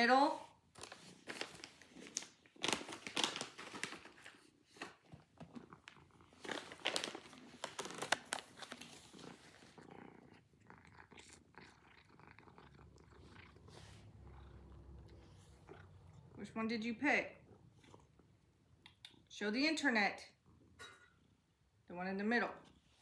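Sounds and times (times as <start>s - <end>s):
rustling and crinkling: 0.1s - 10.5s
cat purring: 4.5s - 19.3s.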